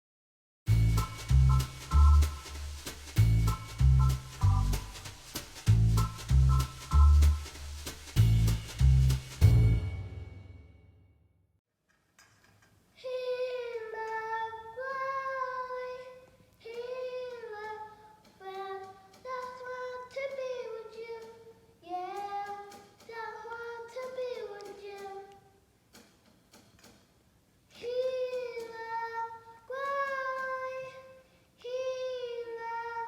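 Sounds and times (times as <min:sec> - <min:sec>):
high voice singing unaccompanied: 0:13.0 - 0:25.4, 0:27.8 - 0:33.0.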